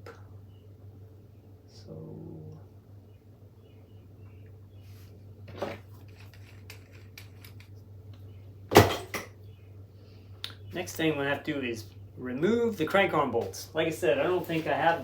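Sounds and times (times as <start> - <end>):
loud metal clank: 8.7 - 9.3.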